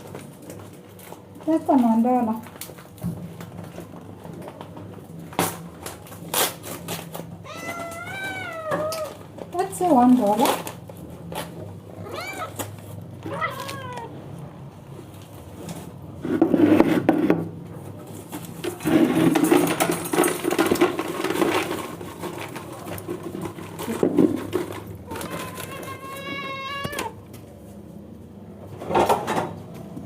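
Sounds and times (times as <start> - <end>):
cat meowing: 7.4 - 9.2, 12.0 - 14.2, 25.1 - 27.2.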